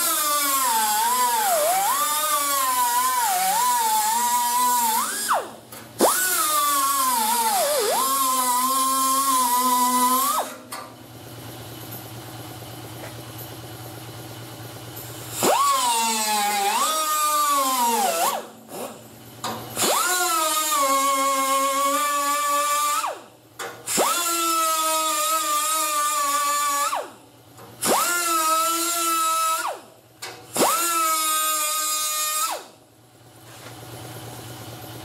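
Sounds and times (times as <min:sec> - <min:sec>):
grinder cutting metal: 0:00.0 - 0:10.8, 0:15.2 - 0:27.2, 0:27.8 - 0:29.8, 0:30.4 - 0:32.7.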